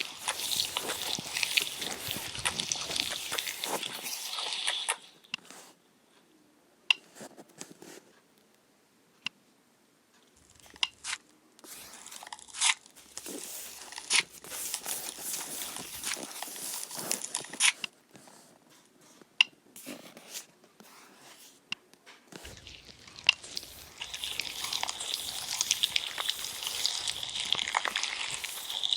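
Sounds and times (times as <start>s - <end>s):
slime squeezed by hand: 0.0s - 5.1s, 11.7s - 17.7s, 22.4s - 28.9s.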